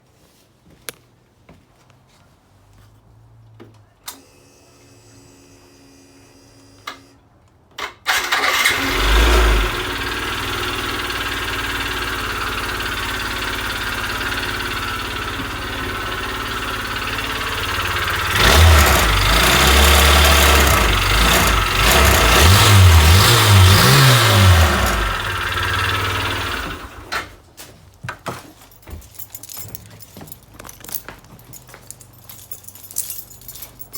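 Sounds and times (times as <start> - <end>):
scooter engine revving: 8.2 - 27.3.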